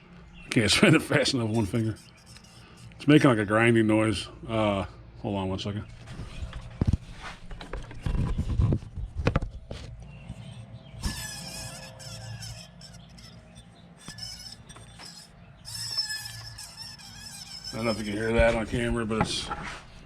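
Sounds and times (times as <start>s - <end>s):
pulley bearing whining: 1.2s - 3.5s, 7.6s - 19.0s.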